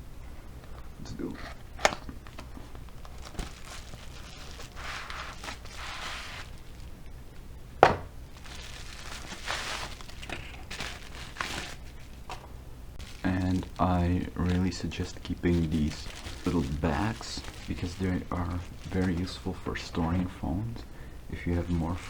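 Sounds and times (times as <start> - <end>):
plastic bag crinkling: 1.6 - 7.1, 7.8 - 12.4, 13.0 - 20.4.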